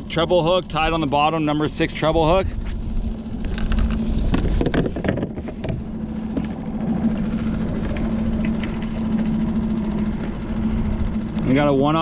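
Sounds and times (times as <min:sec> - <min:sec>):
boat motor idling: 0:00.0 - 0:12.0
low wind rumble: 0:00.0 - 0:12.0
fishing tackle clicks and knocks: 0:03.4 - 0:06.5.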